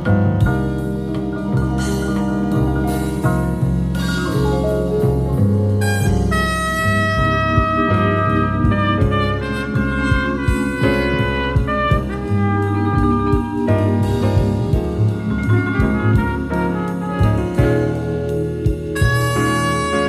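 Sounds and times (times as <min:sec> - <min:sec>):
small-group jazz: 0:00.0 - 0:20.0
trumpet long held notes: 0:05.8 - 0:20.0.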